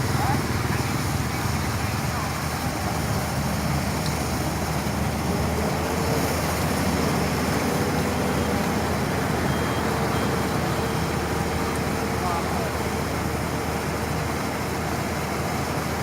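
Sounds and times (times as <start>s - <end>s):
heavy diesel engine running: 0.0s - 16.0s
faint high beep: 9.4s - 11.2s.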